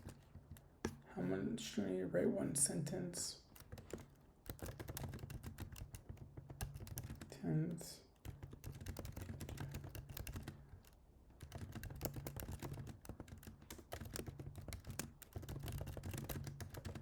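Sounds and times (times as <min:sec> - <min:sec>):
fast typing on keyboard: 0:00.0 - 0:01.0, 0:03.4 - 0:17.0.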